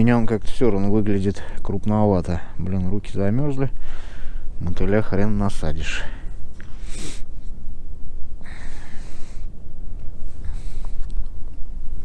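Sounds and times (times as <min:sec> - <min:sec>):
man breathing sharply: 0:03.8 - 0:04.6, 0:06.0 - 0:07.4.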